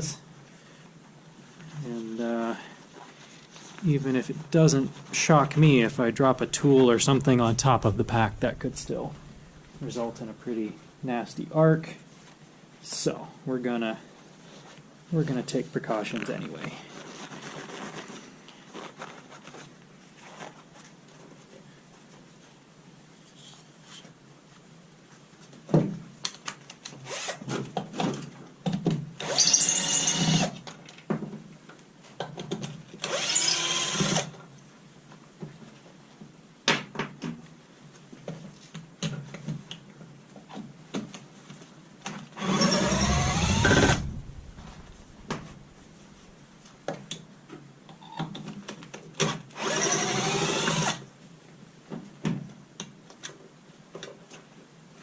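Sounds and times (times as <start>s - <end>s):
power drill whining: 29.2s - 30.5s, 33.0s - 34.3s, 42.4s - 44.9s, 49.6s - 51.0s.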